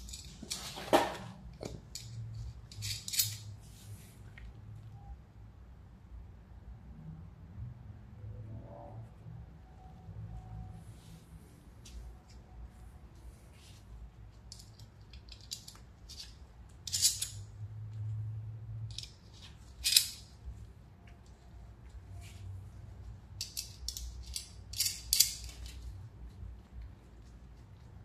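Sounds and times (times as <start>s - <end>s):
metallic clicks and scrapes of tools: 0.0s - 0.9s, 1.5s - 4.0s, 14.3s - 18.0s, 18.8s - 20.4s, 23.3s - 25.9s.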